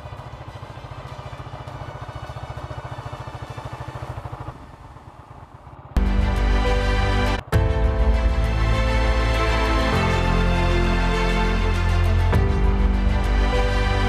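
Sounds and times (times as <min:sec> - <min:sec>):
motorcycle engine running: 0:00.0 - 0:14.0
loud background music: 0:06.0 - 0:14.0.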